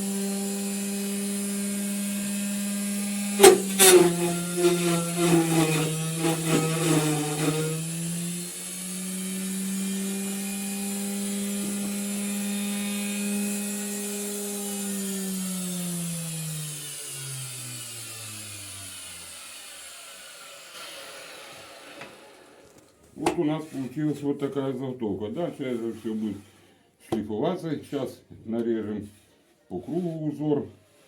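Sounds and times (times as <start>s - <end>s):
router motor running and spinning down: 0.0s - 22.8s.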